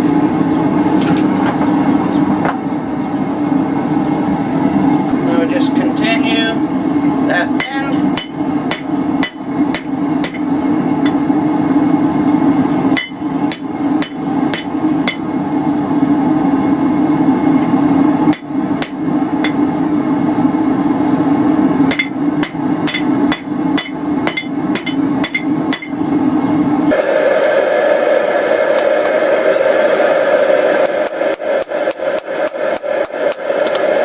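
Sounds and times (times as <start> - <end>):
steady low hum: 0.0 - 34.0
hammer striking metal on anvil: 7.6 - 10.4, 13.0 - 15.3, 21.9 - 26.0, 30.8 - 33.9.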